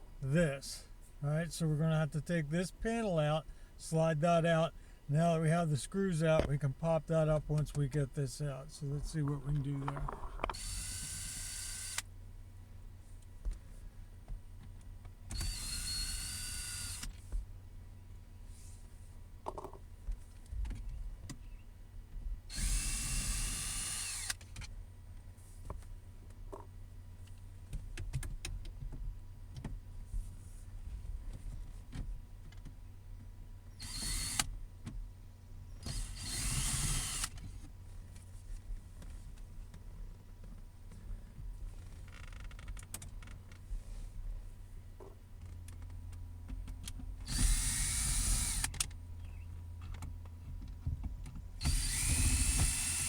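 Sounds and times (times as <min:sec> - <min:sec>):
small electric motor whining: 0:09.9 - 0:12.0, 0:15.3 - 0:17.1, 0:22.5 - 0:24.4, 0:33.8 - 0:34.5, 0:35.8 - 0:37.4, 0:47.3 - 0:48.8, 0:51.6 - 0:53.0
loud noisy whirring bursts: 0:15.4 - 0:17.1, 0:22.5 - 0:24.3, 0:33.8 - 0:34.4, 0:35.9 - 0:37.3, 0:47.3 - 0:48.7, 0:51.6 - 0:53.0
clicks and knocks of car console: 0:27.7 - 0:29.8.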